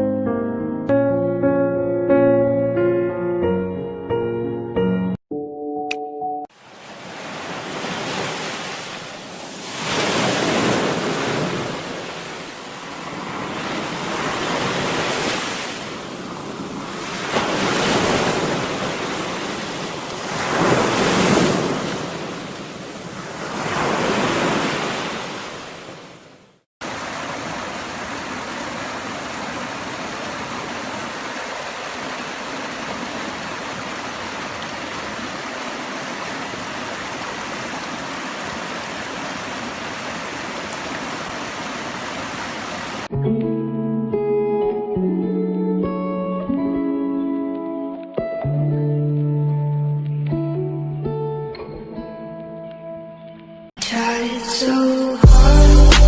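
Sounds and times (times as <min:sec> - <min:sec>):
sea waves washing in: 0:06.5 - 0:43.1
water rushing: 0:06.5 - 0:43.1.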